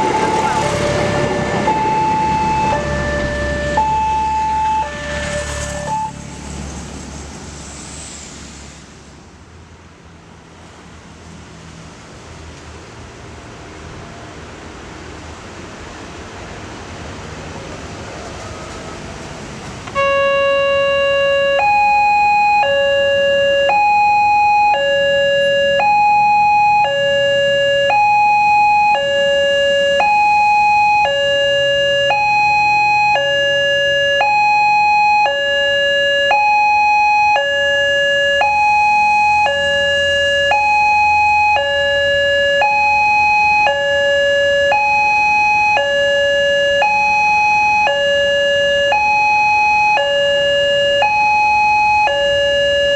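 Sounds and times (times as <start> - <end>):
level crossing two-tone alarm: 0.0 - 6.3, 19.9 - 52.9.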